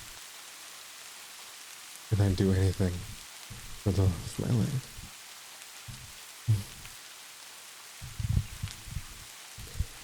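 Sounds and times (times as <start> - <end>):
steady rain patter: 0.0 - 10.0
short low vocal sound: 6.5 - 6.8.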